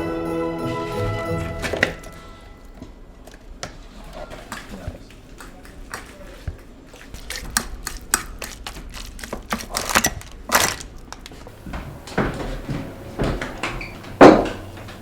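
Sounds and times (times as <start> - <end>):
plates and cutlery clattering: 11.5 - 15.0.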